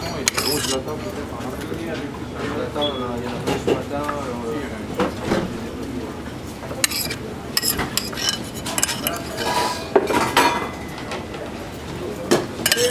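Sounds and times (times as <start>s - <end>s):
dishes and utensils clinking: 0.0s - 1.0s, 6.7s - 11.4s, 12.3s - 12.9s.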